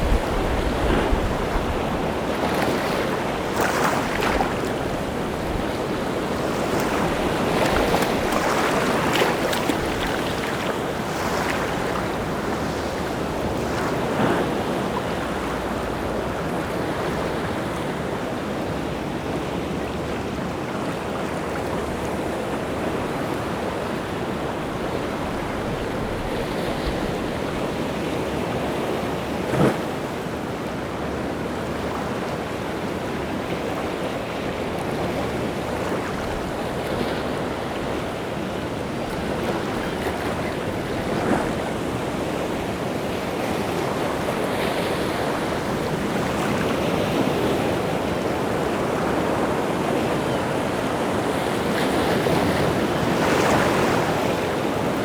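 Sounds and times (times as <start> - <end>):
rough sea surf breaking: 0.0 - 19.2
wind: 0.0 - 55.0.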